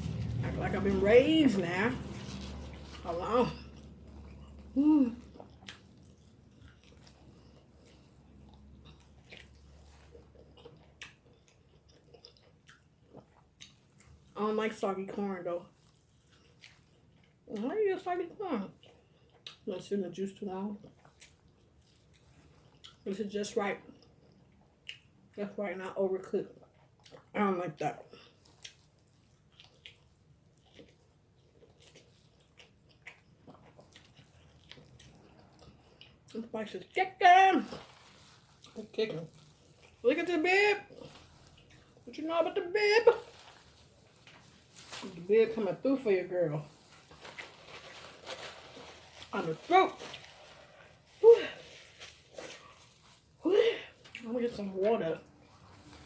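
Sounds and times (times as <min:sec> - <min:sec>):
chewing corn: 0:00.0 - 0:14.4, 0:15.6 - 0:17.7, 0:18.3 - 0:19.9, 0:20.7 - 0:23.2, 0:26.4 - 0:27.4, 0:28.0 - 0:42.1, 0:46.7 - 0:53.4.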